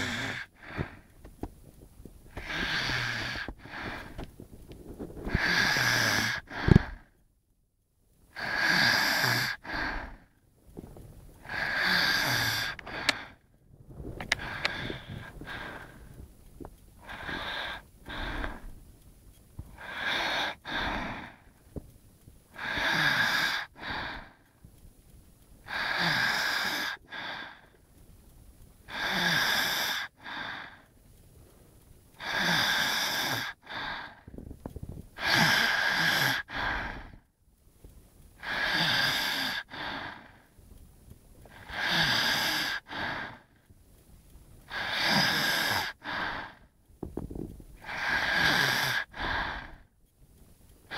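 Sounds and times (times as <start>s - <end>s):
loud rasping snore: 0.0s - 1.0s, 2.4s - 4.2s, 5.2s - 7.0s, 8.4s - 10.1s, 11.4s - 13.4s, 17.0s - 18.6s, 19.8s - 21.4s, 22.6s - 24.3s, 25.7s - 27.6s, 28.9s - 30.7s, 32.2s - 34.2s, 35.2s - 37.1s, 38.4s - 40.3s, 41.5s - 43.5s, 44.7s - 46.6s, 47.8s - 49.8s
quiet breath: 0.0s - 7.3s, 8.2s - 50.9s.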